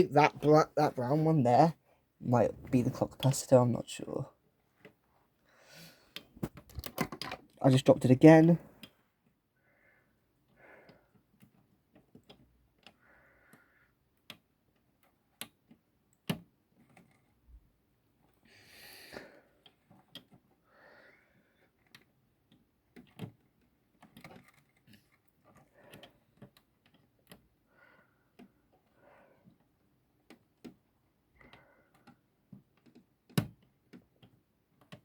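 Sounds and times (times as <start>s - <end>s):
plastic and metal parts clicking: 6.2s - 7.6s, 11.3s - 13.0s, 19.6s - 20.6s, 21.6s - 27.7s, 28.3s - 35.0s.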